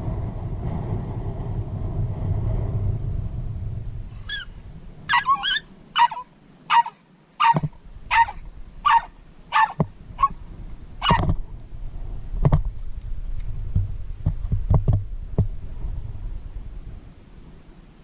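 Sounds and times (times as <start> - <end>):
small dog yapping: 4.2 - 4.5, 5.1 - 10.4, 11.0 - 11.3.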